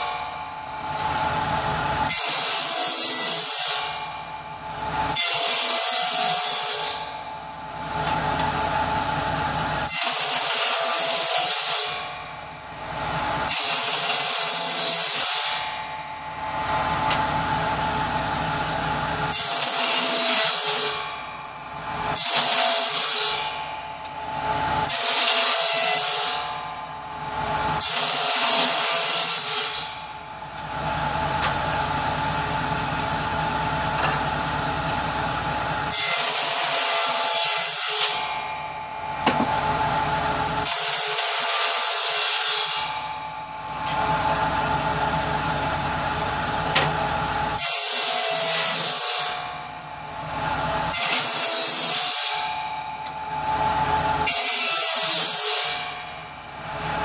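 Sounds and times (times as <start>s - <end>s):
saw blade rasping through wood: 0.0s - 49.6s, 50.2s - 57.0s
power saw motor running: 16.2s - 38.3s, 38.9s - 49.2s.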